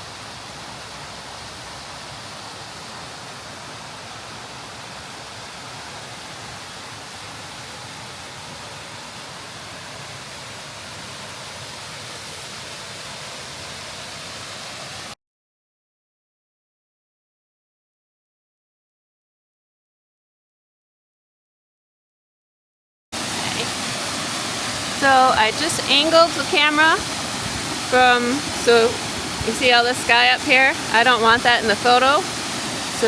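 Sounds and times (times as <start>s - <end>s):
waterfall rushing: 0.0s - 15.2s, 23.2s - 33.0s.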